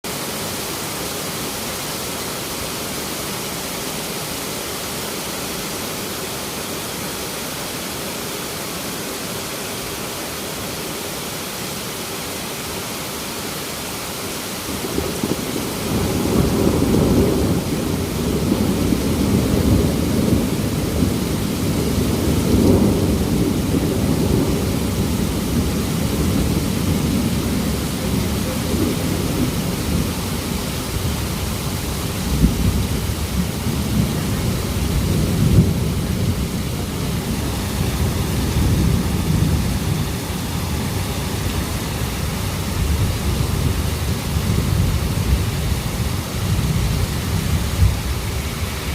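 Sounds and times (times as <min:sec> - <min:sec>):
heavy rain pouring: 0:00.0 - 0:48.9
low rumble of thunder: 0:14.7 - 0:48.9.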